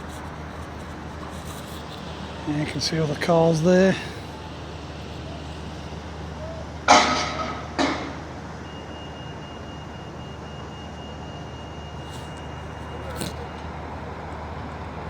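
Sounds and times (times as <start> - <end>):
loud metal clangs: 6.9 - 8.3.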